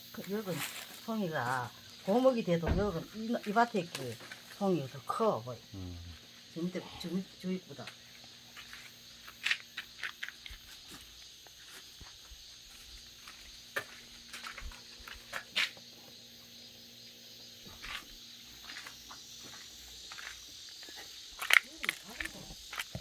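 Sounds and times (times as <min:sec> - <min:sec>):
crickets chirping: 0:00.0 - 0:23.0
handling crinkles and clicks: 0:21.4 - 0:23.0.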